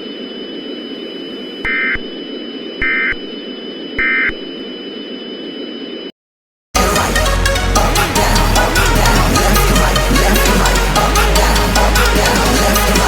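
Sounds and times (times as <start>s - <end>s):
thin high whine: 0.0s - 6.2s.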